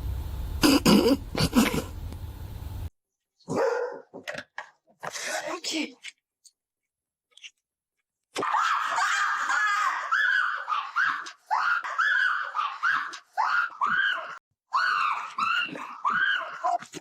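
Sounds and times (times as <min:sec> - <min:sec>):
high-pitched screaming cries: 0:08.4 - 0:16.8.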